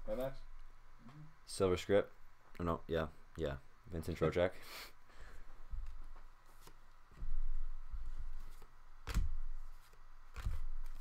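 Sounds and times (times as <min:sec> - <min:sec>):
cards rustling: 0:08.2 - 0:11.0.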